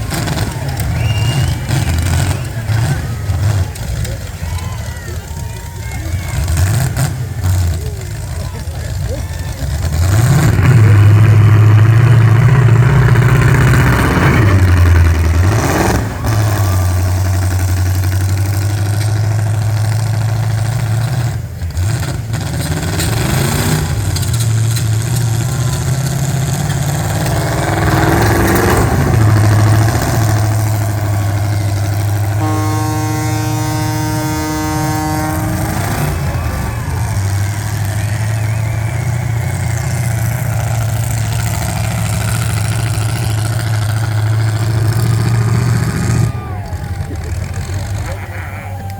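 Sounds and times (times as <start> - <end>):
car engines revving: 0.0 - 48.9
steady horn: 25.6 - 48.9.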